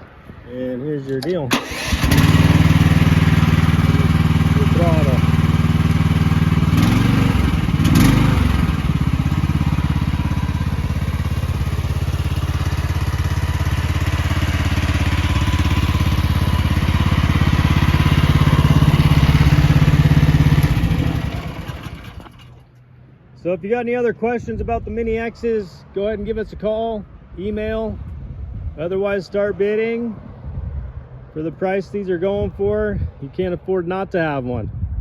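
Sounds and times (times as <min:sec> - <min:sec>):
mini excavator engine running: 0:01.5 - 0:22.7
engine knocks: 0:01.6 - 0:22.6.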